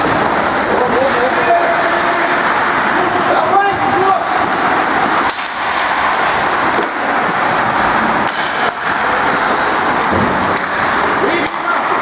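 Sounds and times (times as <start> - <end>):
skates cutting ice: 0.0 - 12.0
rink noise: 4.2 - 12.0.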